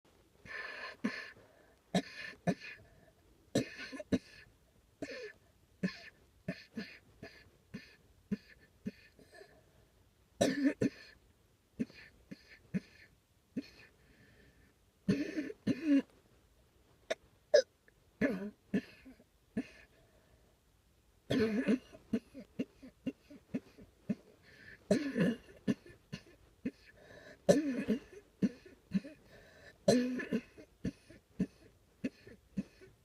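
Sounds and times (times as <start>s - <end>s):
person coughing: 3.6s - 4.4s, 10.4s - 11.2s, 15.1s - 16.1s, 17.6s - 19.9s, 21.3s - 24.3s, 24.9s - 26.9s, 27.5s - 29.2s, 29.8s - 32.9s.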